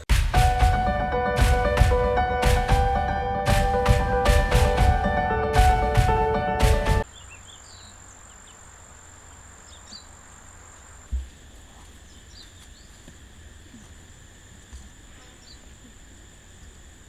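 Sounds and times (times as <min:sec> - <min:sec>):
high-pitched insect drone: 0:12.2 - 0:17.0.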